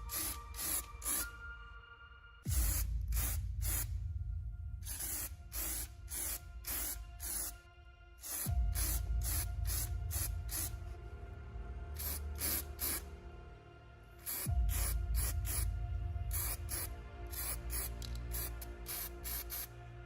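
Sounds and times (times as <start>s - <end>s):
hi-hat ticks: 2.5s - 4.0s.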